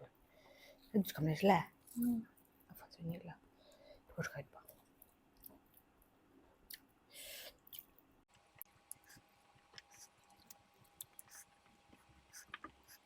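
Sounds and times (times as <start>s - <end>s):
soft chewing: 4.6s - 13.0s.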